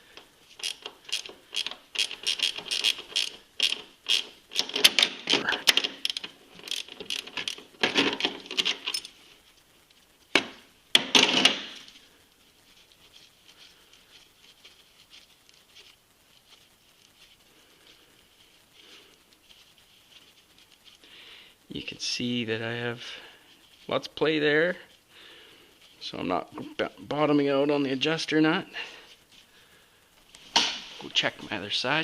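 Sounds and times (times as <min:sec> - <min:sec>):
socket ratchet clicking: 0:00.6 - 0:05.1, 0:05.8 - 0:07.6.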